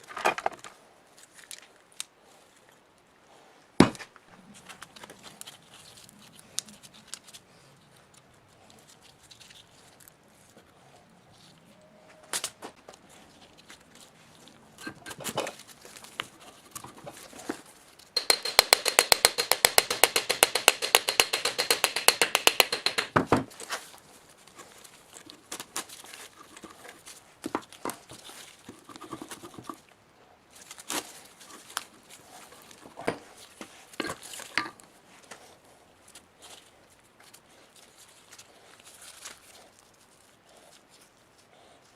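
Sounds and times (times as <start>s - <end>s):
clicks and knocks of tools: 18.1s - 23.5s, 34.0s - 34.8s
rapid even clicking strokes: 18.2s - 23.2s.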